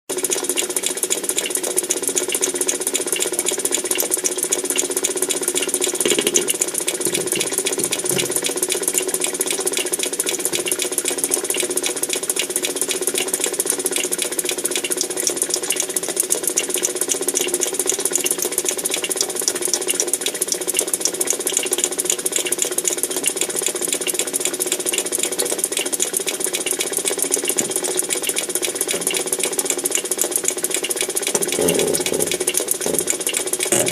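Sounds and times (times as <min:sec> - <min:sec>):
fast mechanical rattling and clicking: 0:00.1 - 0:33.9
steady hum: 0:05.6 - 0:08.8.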